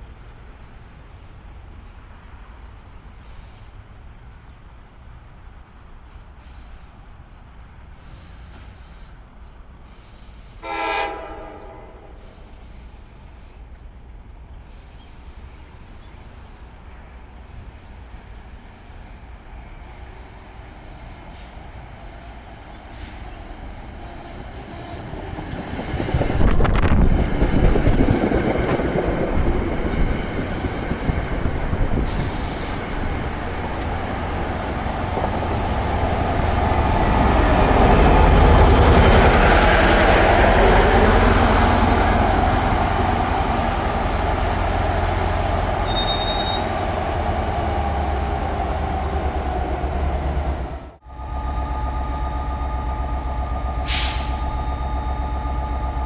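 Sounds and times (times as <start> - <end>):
commuter train rumble: 0.0 - 56.0
high thin wheel squeal: 41.0 - 47.0.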